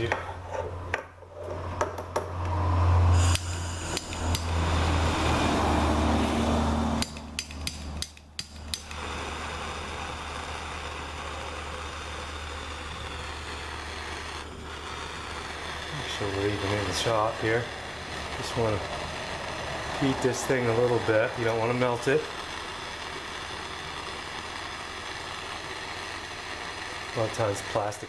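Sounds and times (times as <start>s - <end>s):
heating tool rushing noise: 2.3s - 28.0s
sharp clicks: 3.3s - 4.6s, 7.0s - 9.0s.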